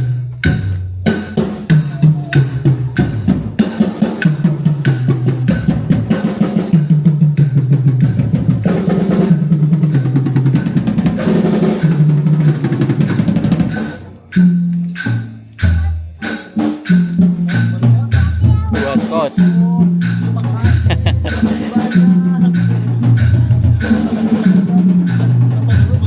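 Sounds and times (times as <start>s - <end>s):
drum kit playing: 0.0s - 26.0s
backing track bass line: 13.5s - 26.0s.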